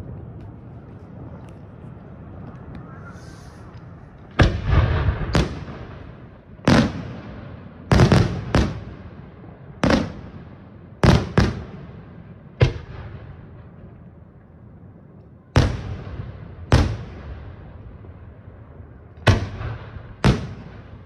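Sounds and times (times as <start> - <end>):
fireworks bangs: 2.2 - 14.0, 19.2 - 21.0.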